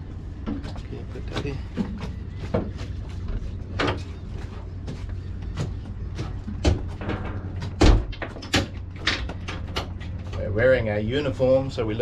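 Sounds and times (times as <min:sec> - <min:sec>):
steady low hum: 0:00.0 - 0:12.0
sharp knocks and clunks: 0:05.5 - 0:10.0.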